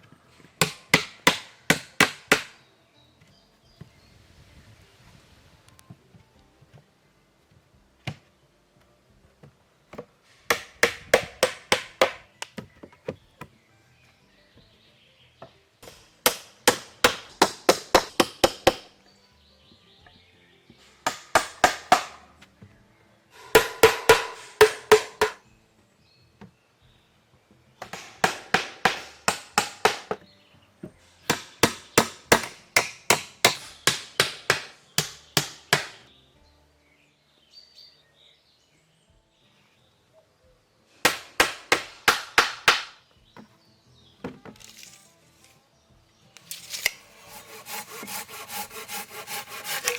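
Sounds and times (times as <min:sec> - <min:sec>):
hand hammering: 0:00.6 - 0:02.5, 0:10.5 - 0:12.6, 0:16.3 - 0:18.9, 0:21.0 - 0:22.2, 0:23.5 - 0:25.4, 0:27.8 - 0:30.2, 0:31.3 - 0:36.0, 0:41.1 - 0:42.9, 0:47.3 - 0:49.9.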